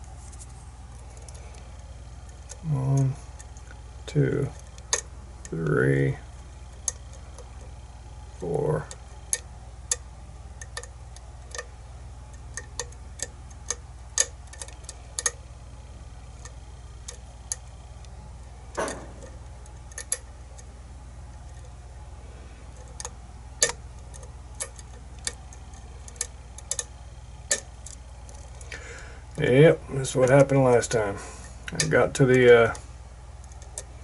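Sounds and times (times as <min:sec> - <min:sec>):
low steady hum: 0:00.0 - 0:34.0
lock pick clicking: 0:22.8 - 0:28.4.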